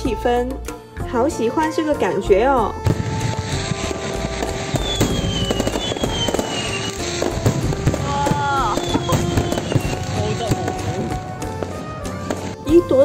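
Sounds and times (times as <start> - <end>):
fireworks bangs and crackles: 2.8 - 13.0
falling firework whistles: 2.9 - 12.6.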